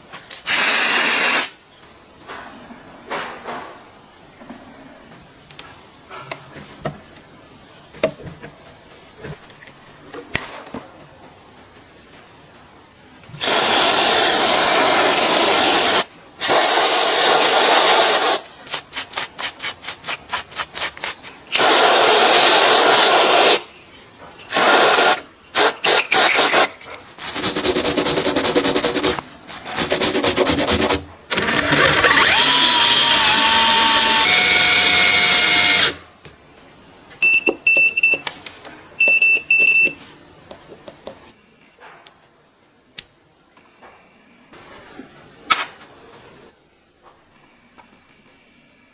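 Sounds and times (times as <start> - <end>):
electric screwdriver running: 31.3 - 36.0.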